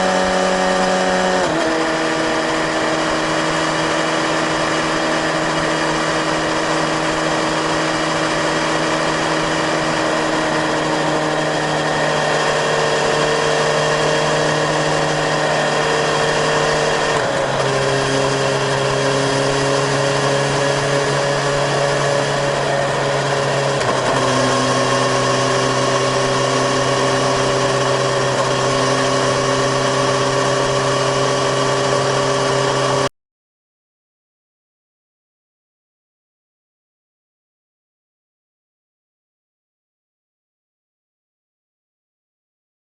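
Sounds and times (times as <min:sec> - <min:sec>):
motorcycle engine at high revs: 0:00.0 - 0:33.1.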